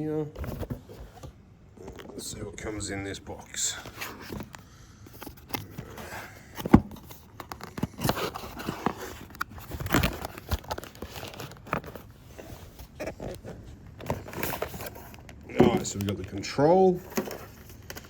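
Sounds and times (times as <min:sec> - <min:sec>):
cardboard packaging being opened: 0:03.7 - 0:18.0.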